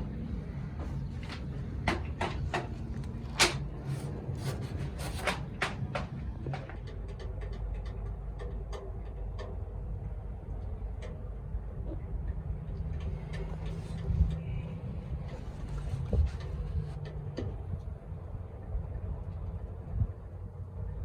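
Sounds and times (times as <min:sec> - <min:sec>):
wooden knocks and clicks: 0:04.5 - 0:09.8.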